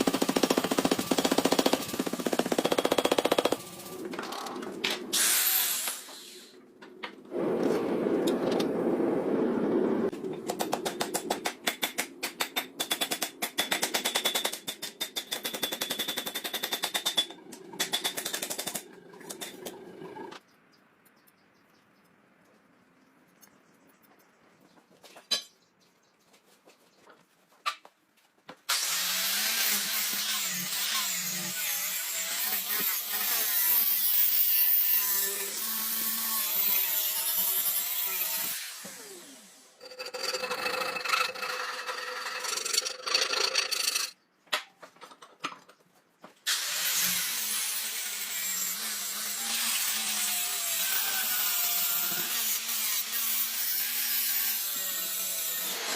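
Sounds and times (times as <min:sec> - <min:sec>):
power grinder grinding steel: 0:28.7 - 0:44.2, 0:46.5 - 0:55.9.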